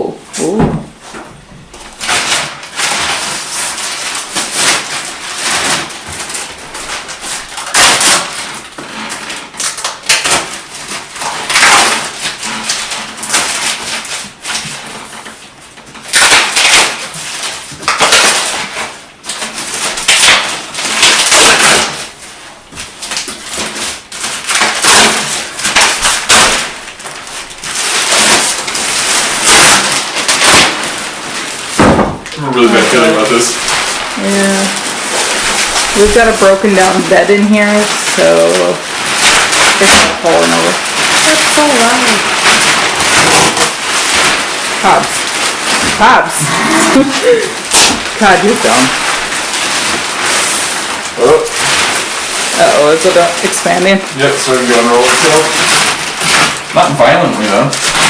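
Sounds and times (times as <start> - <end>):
plastic wrap rustling and crinkling: 0.0 - 58.0.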